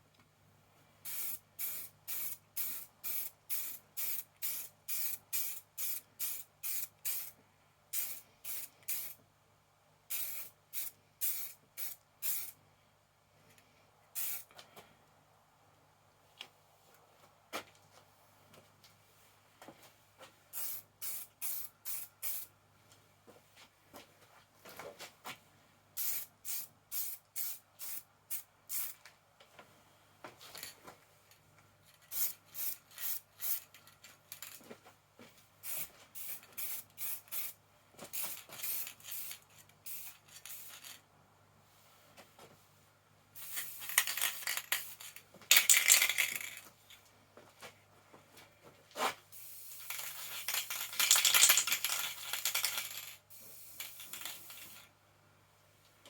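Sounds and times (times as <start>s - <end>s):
spray can hissing: 1.1s - 7.3s, 8.0s - 9.2s, 10.1s - 12.5s, 14.2s - 14.5s, 20.6s - 22.5s, 26.0s - 29.0s, 35.6s - 40.8s, 43.4s - 46.6s, 49.3s - 54.8s.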